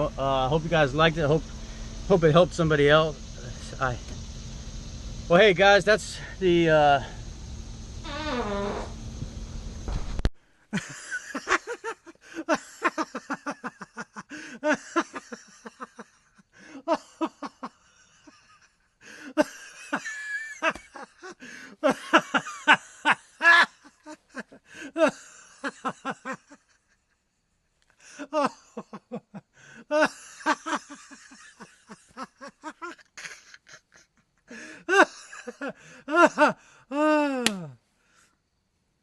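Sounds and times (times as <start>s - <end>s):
person laughing: 10.7s - 27.0s, 28.1s - 37.7s.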